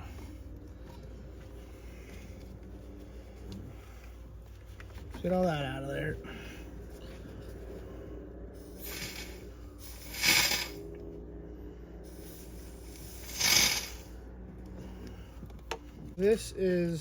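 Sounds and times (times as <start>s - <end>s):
compressed air blasts: 8.6s - 10.8s, 12.2s - 14.1s.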